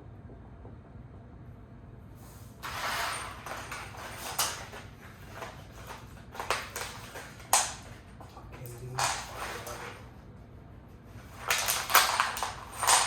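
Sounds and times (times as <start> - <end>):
packaging rustling: 2.6 - 10.0, 11.2 - 13.0.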